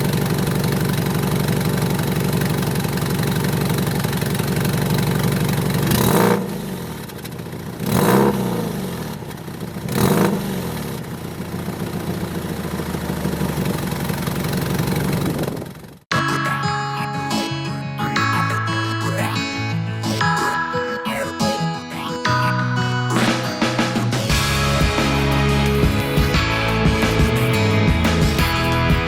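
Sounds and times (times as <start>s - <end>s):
car engine idling and revving: 0.0s - 16.1s, 23.2s - 29.0s.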